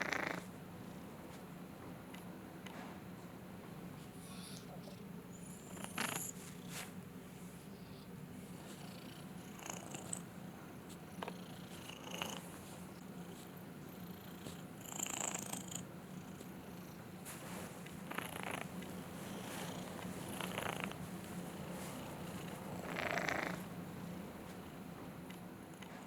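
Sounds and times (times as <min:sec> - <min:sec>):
cat purring: 0:00.0 - 0:00.5, 0:05.4 - 0:06.9, 0:08.7 - 0:17.1, 0:17.8 - 0:26.0.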